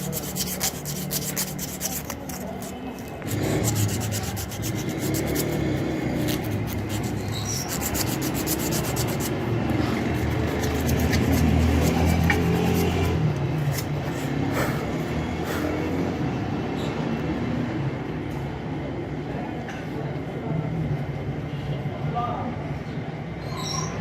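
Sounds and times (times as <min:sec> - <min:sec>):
abrasive sanding strokes: 0:00.0 - 0:14.7.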